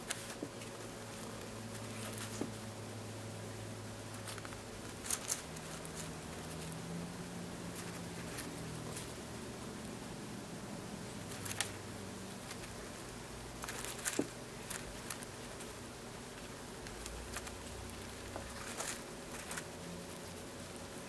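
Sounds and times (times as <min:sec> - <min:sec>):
faint steady hiss and hum: 0:00.0 - 0:21.0
hamster nibbling seeds: 0:04.1 - 0:09.8, 0:11.0 - 0:21.0.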